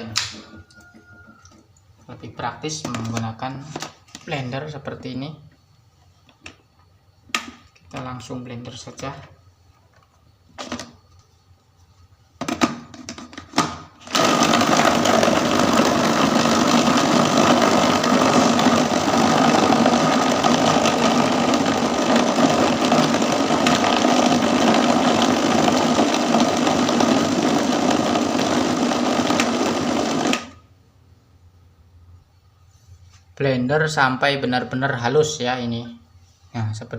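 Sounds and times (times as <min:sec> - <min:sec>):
electric blender running: 0:14.0 - 0:30.6.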